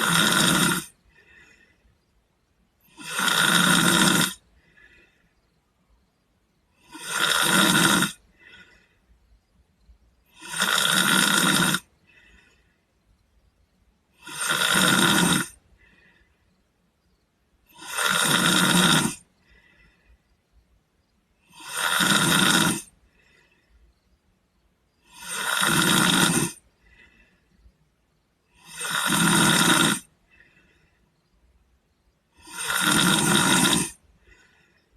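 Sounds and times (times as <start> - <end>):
boy snoring: 0.0 - 1.7, 2.8 - 5.2, 6.7 - 8.9, 10.2 - 12.6, 14.1 - 16.2, 17.6 - 20.0, 21.4 - 23.6, 25.0 - 27.3, 28.4 - 30.8, 32.3 - 34.6
faint breathing: 0.8 - 3.2, 4.3 - 7.2, 8.2 - 10.6, 11.8 - 14.3, 15.5 - 17.8, 19.1 - 21.6, 22.8 - 25.5, 26.5 - 28.9, 30.0 - 32.6, 33.9 - 34.9.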